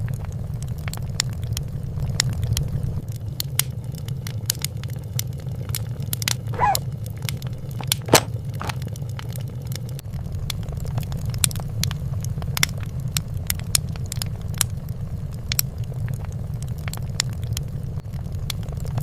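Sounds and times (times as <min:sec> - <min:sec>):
wood fire crackling: 0:00.4 - 0:19.0
wavering squeak: 0:06.5 - 0:06.8.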